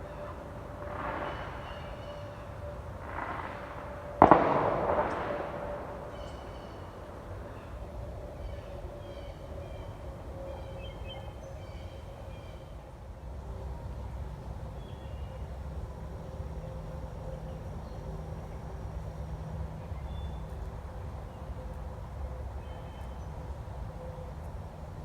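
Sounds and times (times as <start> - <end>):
faint outdoor background noise: 0.0 - 25.0
sharp bang with echo: 3.0 - 7.7.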